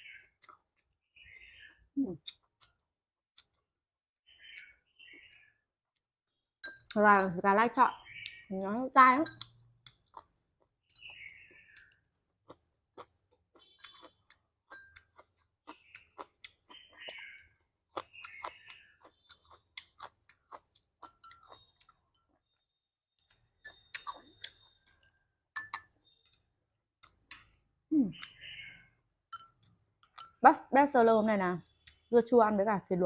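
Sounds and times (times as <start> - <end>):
wet chewing: 9.4 - 22.4, 23.2 - 25.2.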